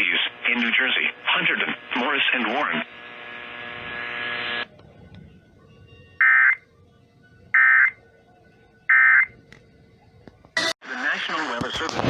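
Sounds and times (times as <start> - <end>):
buzzing tone: 0.0 - 8.0.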